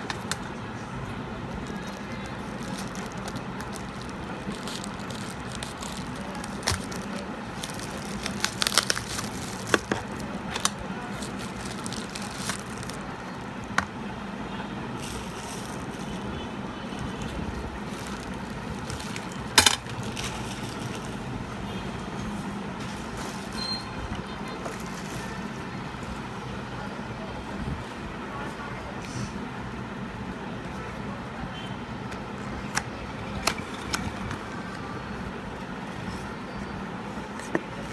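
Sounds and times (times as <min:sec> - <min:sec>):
packaging clicks and crinkles: 0:00.0 - 0:14.0, 0:14.9 - 0:21.4, 0:32.0 - 0:34.9
low background hum: 0:00.0 - 0:37.9.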